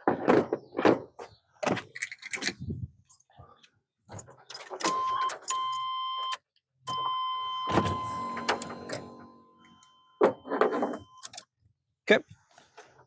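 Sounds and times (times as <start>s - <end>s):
keys jangling and clicking: 4.1s - 5.9s
electronic warning tone: 6.9s - 11.3s.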